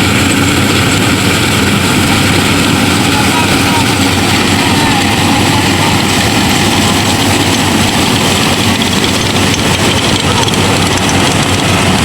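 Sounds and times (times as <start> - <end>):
harvester engine humming: 0.0 - 12.0
mechanical clatter: 4.0 - 12.0.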